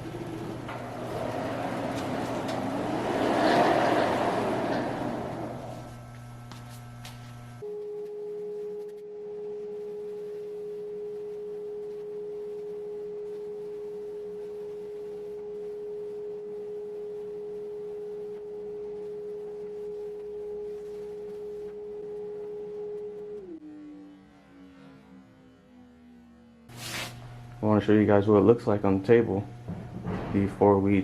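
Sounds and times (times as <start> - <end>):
motor whine: 0.0 - 7.7, 10.2 - 26.6.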